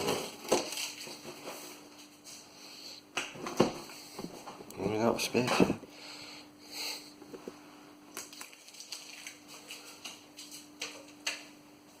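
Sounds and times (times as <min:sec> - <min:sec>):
packaging rustle: 0:00.0 - 0:02.1, 0:08.2 - 0:10.7
faint steady hum: 0:00.0 - 0:12.0.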